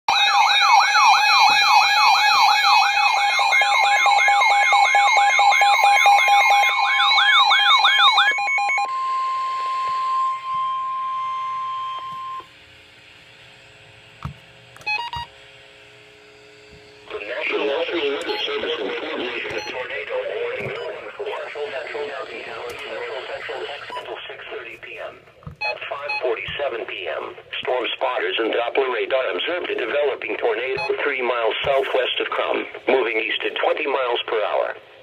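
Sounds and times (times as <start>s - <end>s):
warbling electronic alarm: 0.1s - 12.5s, 14.8s - 15.3s, 17.1s - 24.2s, 25.6s - 26.8s
faint hum: 0.2s - 35.0s.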